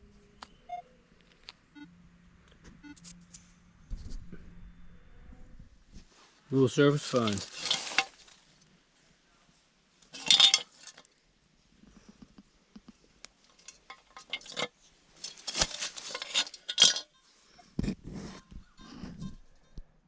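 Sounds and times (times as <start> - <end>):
digging tool scraping soil and stones: 6.9 - 8.5, 10.1 - 11.1, 13.5 - 17.0.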